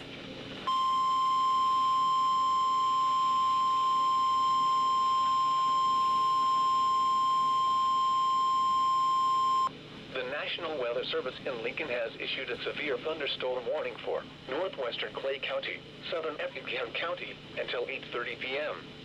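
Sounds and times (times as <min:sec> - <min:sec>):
steady high alarm tone through radio: 0:00.7 - 0:09.7.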